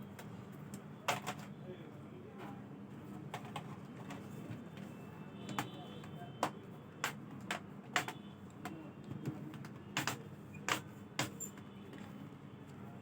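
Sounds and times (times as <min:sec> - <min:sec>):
laptop keyboard keys clicking: 0:05.5 - 0:11.6.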